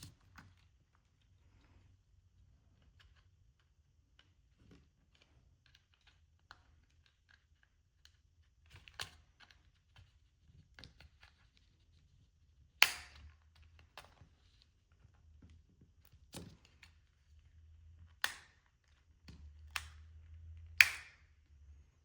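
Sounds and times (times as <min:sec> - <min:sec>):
sharp plastic snap: 0:12.8 - 0:13.3, 0:18.2 - 0:18.6, 0:20.8 - 0:21.3.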